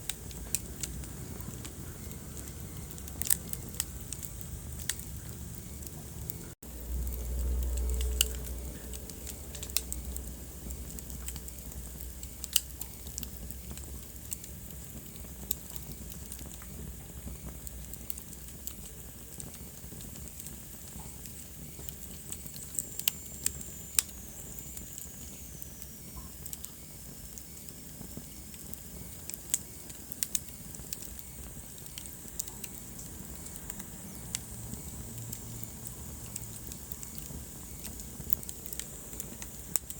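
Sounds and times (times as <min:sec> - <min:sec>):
wood fire crackling and popping: 0:00.0 - 0:39.9
low rumble: 0:00.2 - 0:12.2.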